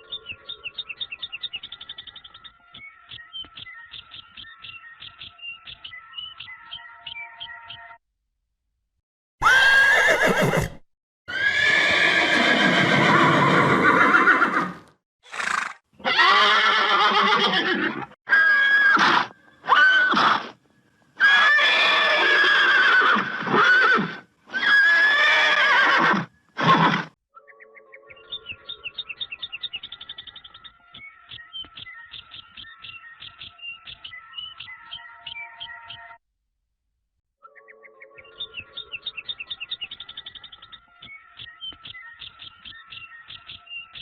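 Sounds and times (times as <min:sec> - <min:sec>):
loud animal calls: 0:09.4 - 0:20.4
soft music: 0:27.3 - 0:29.1, 0:37.4 - 0:39.4.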